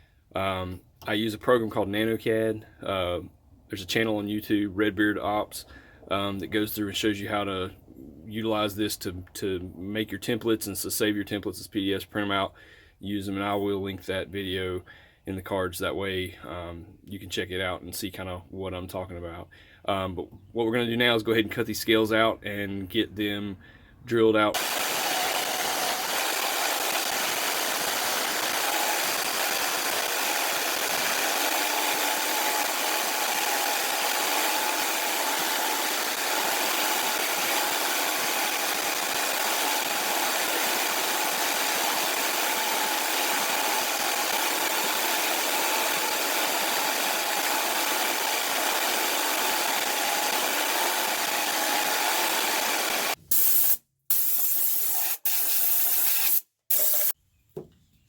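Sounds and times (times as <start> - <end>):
power saw cutting wood: 24.6 - 53.2.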